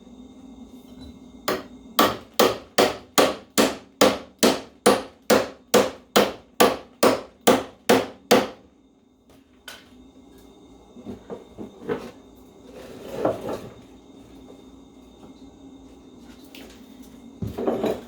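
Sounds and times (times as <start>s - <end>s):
hammer striking metal: 1.5s - 8.6s.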